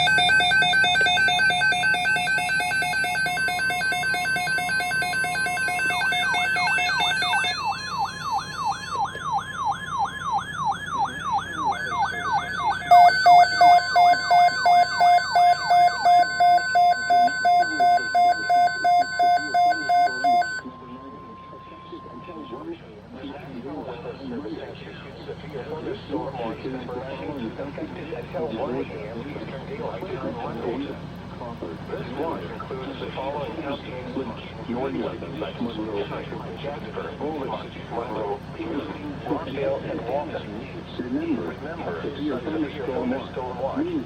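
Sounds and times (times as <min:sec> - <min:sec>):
pulsing beep: 0:00.0 - 0:22.6
siren-like wail: 0:00.0 - 0:22.7
faint steady tone: 0:00.0 - 0:24.4.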